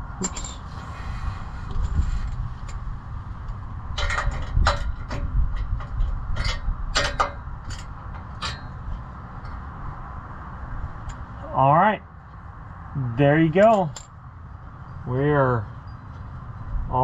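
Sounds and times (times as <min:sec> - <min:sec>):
hand tools clinking on metal: 0:00.2 - 0:00.8, 0:13.6 - 0:14.1.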